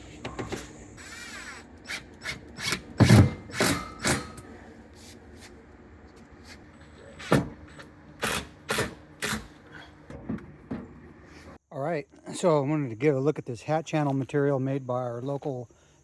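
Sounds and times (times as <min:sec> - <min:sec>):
hard objects knocking and clunking: 0:10.1 - 0:11.1.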